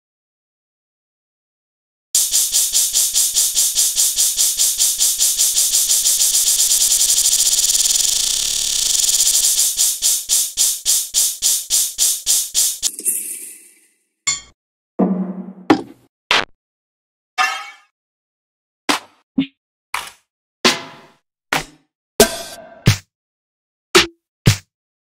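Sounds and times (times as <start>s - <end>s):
synthesized hissy pulses: 2.2s - 13.8s.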